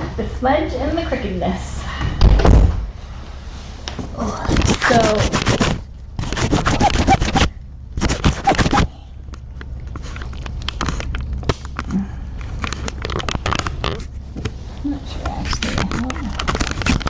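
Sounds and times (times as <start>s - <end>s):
low hum: 0.0s - 17.0s
microphone rubbing and scraping: 3.4s - 9.0s.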